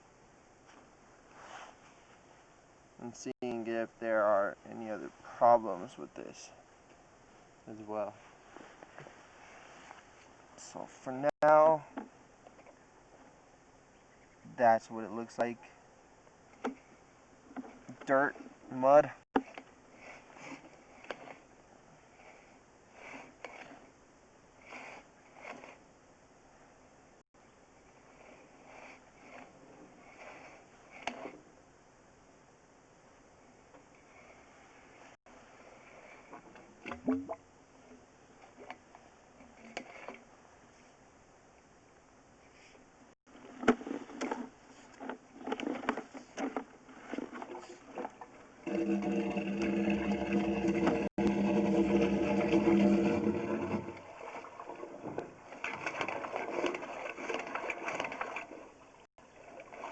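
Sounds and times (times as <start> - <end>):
faint sniffs: 24.6 - 25.1, 28.1 - 30.7, 42.4 - 42.8
low-pitched motor drone: 48.6 - 54.0.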